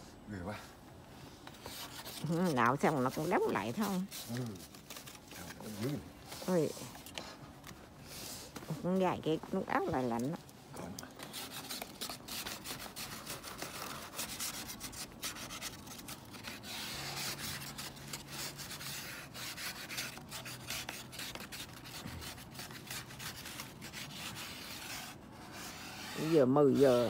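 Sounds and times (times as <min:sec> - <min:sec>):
ice scraping off car: 0:11.3 - 0:27.0.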